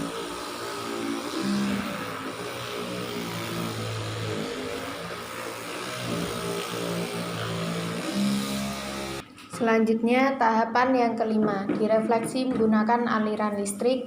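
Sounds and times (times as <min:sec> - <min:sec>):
vibrating massager motor hum: 0:00.0 - 0:09.2.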